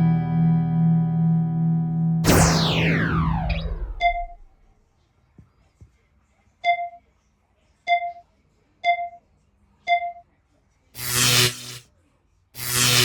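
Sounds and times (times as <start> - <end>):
falling swoosh: 2.2 - 4.5
short electronic beeps: 2.2 - 4.5, 6.7 - 7.0.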